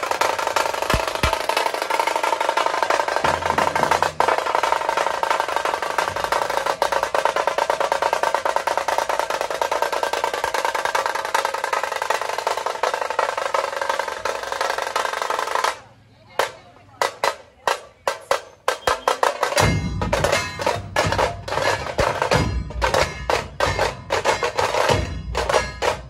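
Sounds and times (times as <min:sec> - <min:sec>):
deep drums: 0:00.0 - 0:15.0, 0:18.2 - 0:26.0
fast drum roll: 0:00.0 - 0:15.8.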